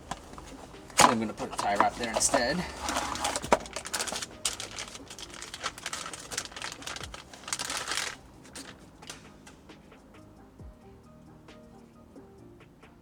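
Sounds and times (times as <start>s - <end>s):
plastic parts clicking and rattling: 0.0s - 9.7s
rustling crinkle: 0.0s - 9.8s.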